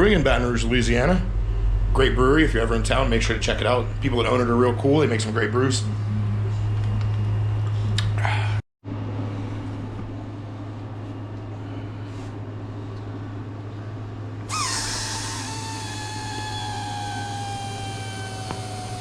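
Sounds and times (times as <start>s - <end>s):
low hum: 0.0s - 19.0s
compressed air rushing with whistle: 14.5s - 19.0s.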